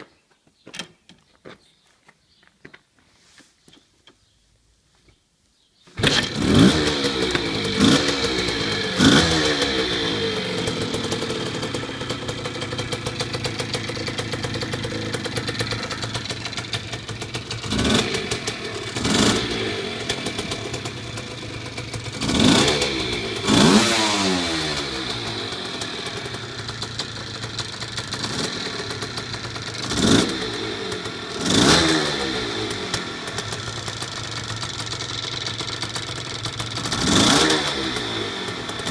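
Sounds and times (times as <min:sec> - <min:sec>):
motorcycle engine revving: 0:06.0 - 0:38.9.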